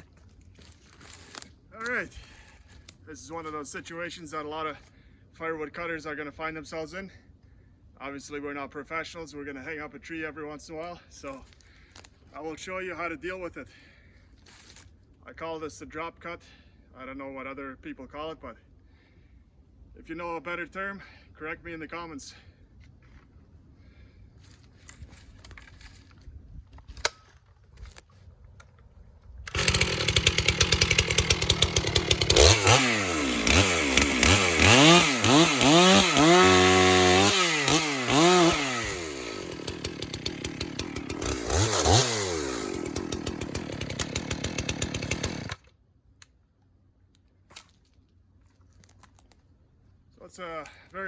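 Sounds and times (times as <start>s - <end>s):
chainsaw cutting log: 29.5s - 45.7s.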